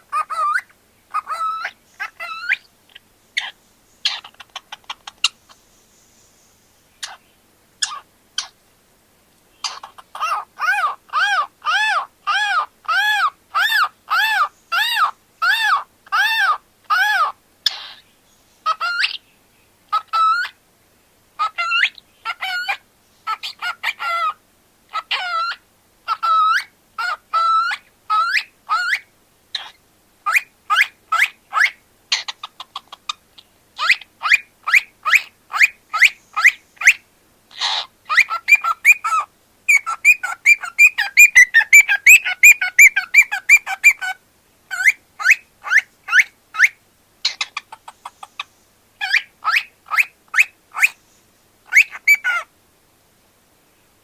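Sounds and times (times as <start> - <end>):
cockatiel chirping and whistling: 0.1 - 2.6, 9.6 - 18.0, 19.9 - 20.6, 21.4 - 33.2, 33.8 - 48.2, 49.0 - 51.0, 51.7 - 52.5.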